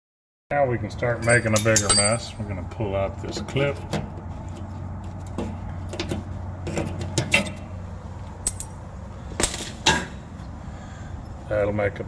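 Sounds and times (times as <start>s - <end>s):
metallic clinks of hand tools: 1.2s - 2.4s
sharp metal clanks: 1.2s - 2.4s.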